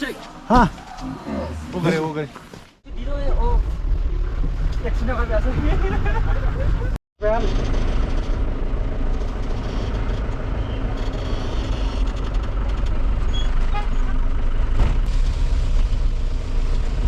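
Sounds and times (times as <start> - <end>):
engine running: 3.7 - 13.4.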